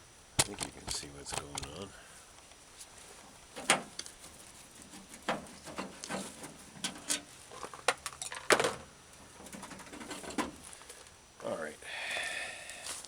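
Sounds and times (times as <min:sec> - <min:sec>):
hand tools clicking and knocking: 0:00.4 - 0:01.8.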